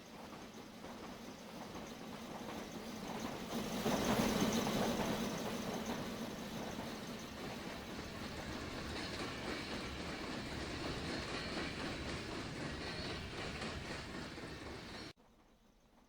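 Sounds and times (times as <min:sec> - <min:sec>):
train wheels rumbling on rails: 0:00.0 - 0:16.0.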